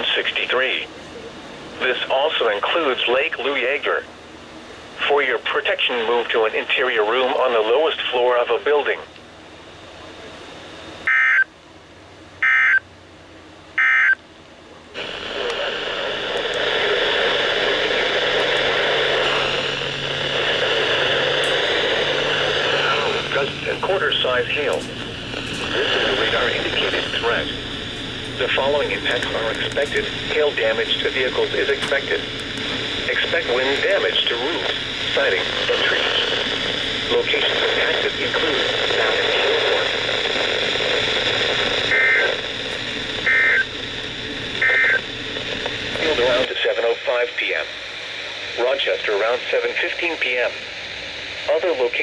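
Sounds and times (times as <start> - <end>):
radio static hiss: 0.0 - 9.2, 15.0 - 52.0
faint low hum: 14.6 - 46.5
warbling digital data tones: 44.6 - 46.5.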